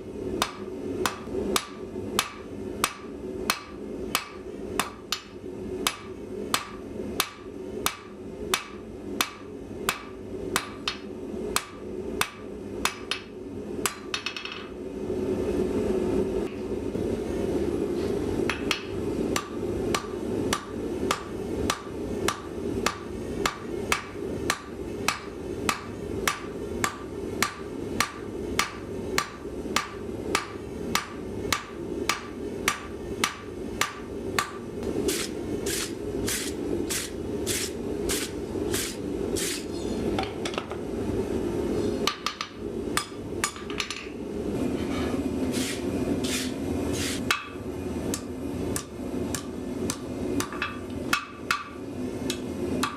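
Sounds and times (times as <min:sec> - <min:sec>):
hammer striking steel on anvil: 0:00.4 - 0:14.7, 0:18.5 - 0:34.6, 0:47.3 - 0:52.9.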